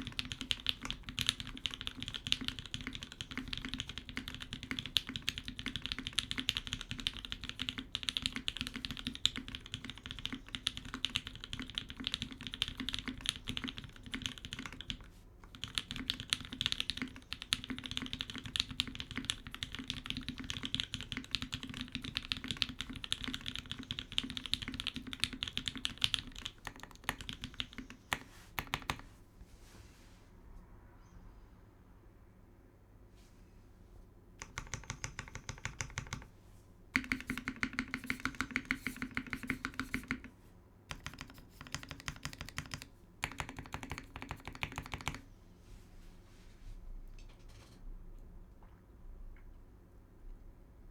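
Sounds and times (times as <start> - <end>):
mechanical keyboard typing: 0.0 - 29.1, 34.4 - 36.3, 37.0 - 40.3, 40.9 - 45.2.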